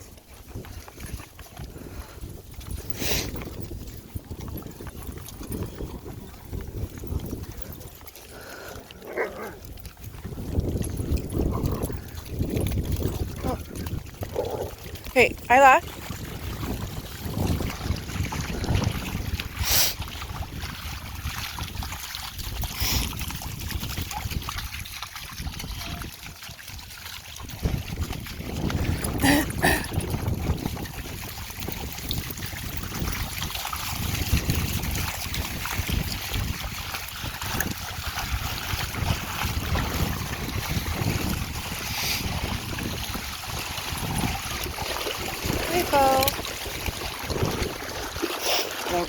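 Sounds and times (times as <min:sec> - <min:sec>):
wind buffeting microphone: 0:00.0 - 0:49.0
hiss of shallow water: 0:02.9 - 0:03.4, 0:08.3 - 0:09.6, 0:19.5 - 0:20.2, 0:22.6 - 0:23.3, 0:41.6 - 0:42.7, 0:47.2 - 0:49.0.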